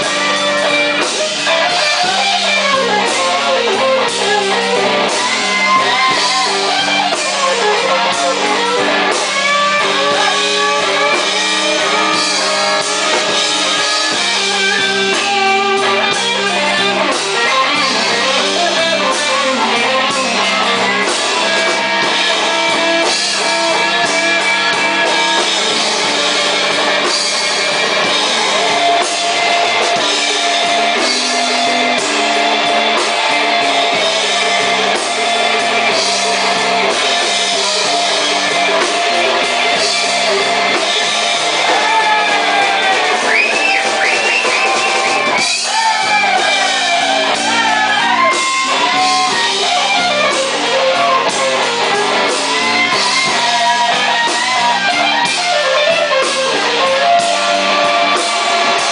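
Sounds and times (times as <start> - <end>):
bass and drums: 0.0 - 58.9
electric guitar lead: 0.0 - 58.9.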